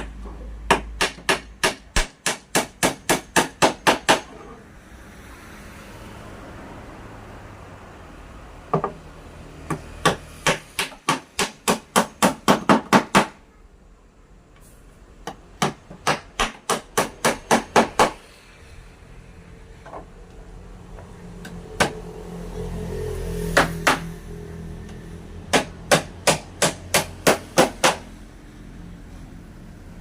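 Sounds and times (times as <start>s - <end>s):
hammer striking wood: 0.0s - 4.4s, 8.7s - 9.0s, 9.7s - 13.4s, 15.2s - 18.2s, 21.4s - 22.0s, 23.6s - 24.1s, 25.5s - 28.1s.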